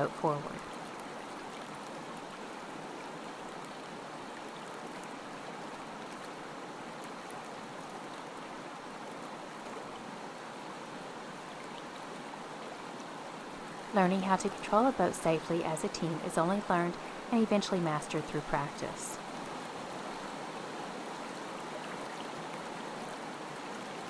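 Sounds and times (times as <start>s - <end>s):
river water rushing: 0.0s - 24.0s.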